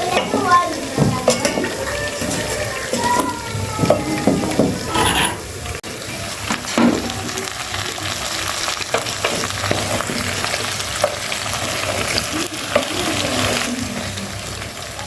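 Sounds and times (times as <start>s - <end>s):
utensil knocking and scraping pan: 4.8s - 5.5s
food sizzling in hot oil: 4.8s - 15.0s.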